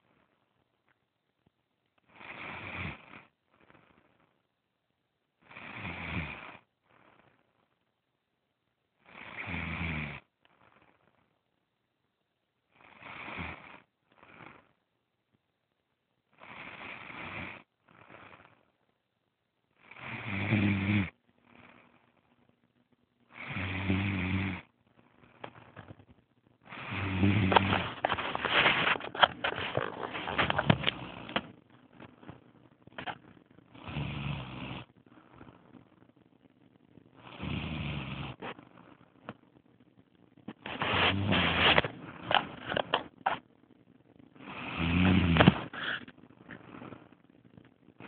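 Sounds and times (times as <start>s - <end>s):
person snoring: 2.1s - 4.1s, 5.4s - 7.4s, 9.0s - 11.0s, 12.8s - 14.8s, 16.4s - 18.7s, 19.8s - 22.1s, 23.3s - 24.7s, 26.6s - 31.5s, 33.0s - 35.7s, 37.2s - 38.8s, 40.6s - 43.4s, 44.4s - 47.1s.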